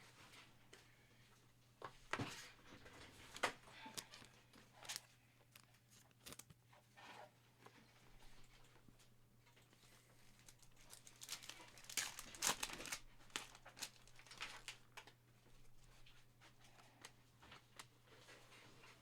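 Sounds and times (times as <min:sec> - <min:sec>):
foil wrapper tearing and crinkling: 0:03.3 - 0:06.5, 0:10.4 - 0:14.8.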